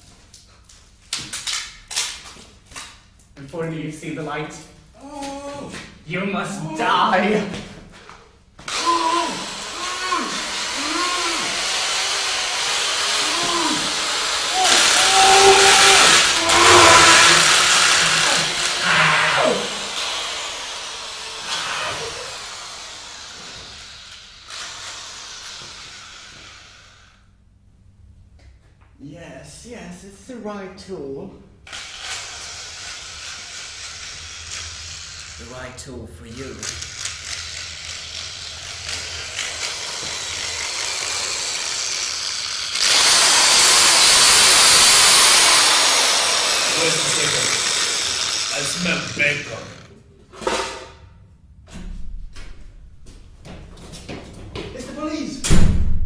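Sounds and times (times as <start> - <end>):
power tool whirring: 8.7 - 27.4, 31.7 - 35.5, 36.3 - 49.9
hiss: 21.4 - 27.3.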